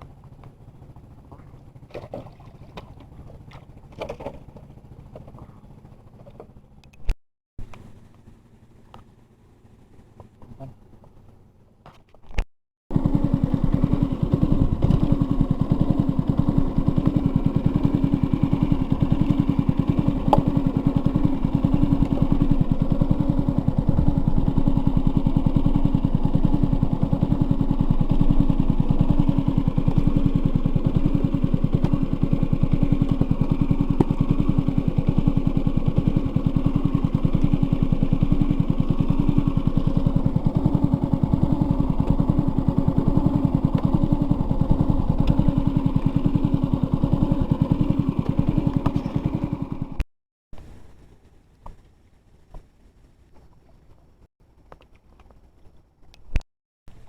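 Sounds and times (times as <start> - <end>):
small engine running: 0.0 - 6.9, 12.9 - 50.0.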